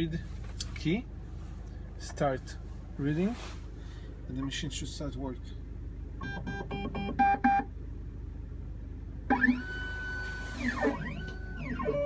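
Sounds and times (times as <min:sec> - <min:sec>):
motors whining: 0:09.3 - 0:12.0.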